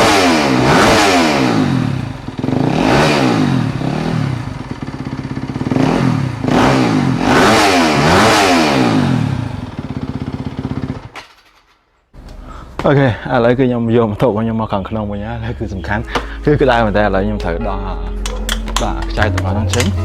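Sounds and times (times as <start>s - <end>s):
motorcycle engine revving: 0.0s - 11.7s, 18.2s - 20.0s.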